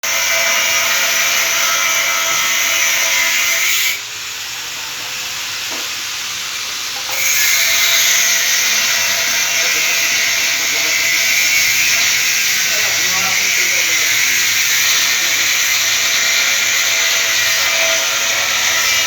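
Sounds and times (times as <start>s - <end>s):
angle grinder cutting: 0.0s - 4.1s, 6.9s - 19.0s.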